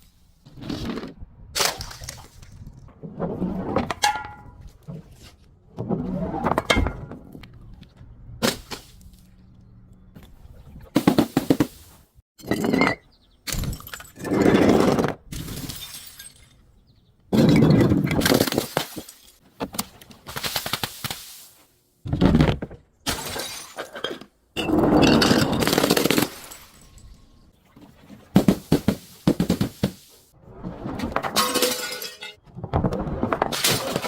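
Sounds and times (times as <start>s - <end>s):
glass bottles breaking: 15.4s - 16.6s, 23.1s - 27.5s, 31.3s - 32.4s.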